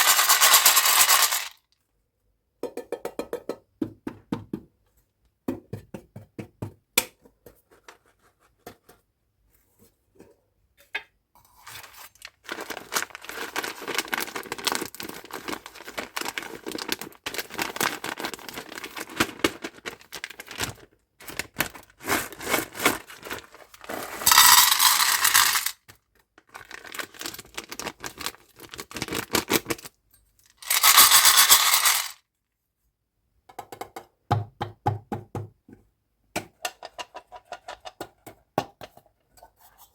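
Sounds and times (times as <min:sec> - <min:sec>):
candies clattering: 0:00.0 - 0:01.6, 0:11.6 - 0:25.9, 0:26.5 - 0:29.9, 0:30.5 - 0:32.2
plastic packaging crinkling: 0:11.8 - 0:25.8, 0:26.5 - 0:29.9, 0:30.6 - 0:32.2.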